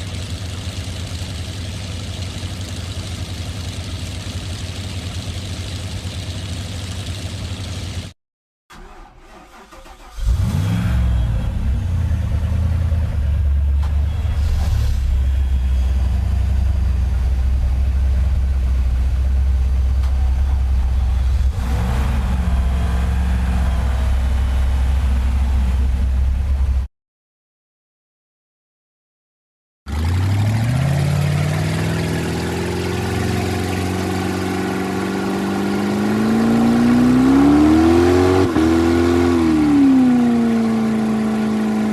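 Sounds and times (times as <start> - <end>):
airboat engine starting: 8.7 - 10.5
engine revving: 8.7 - 26.9, 29.9 - 41.9
airboat engine and propeller: 31.2 - 36.4.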